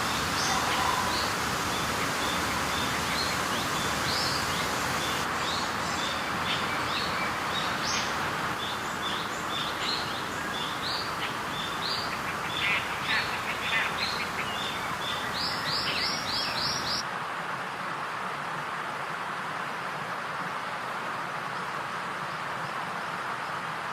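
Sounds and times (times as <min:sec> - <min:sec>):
small birds chirping: 0:00.0 - 0:17.0
outdoor hiss: 0:00.0 - 0:23.9.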